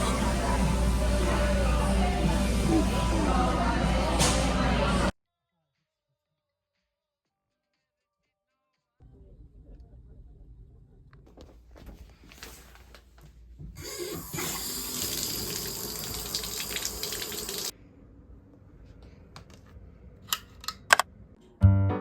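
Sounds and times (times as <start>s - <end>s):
running water: 13.8s - 17.7s.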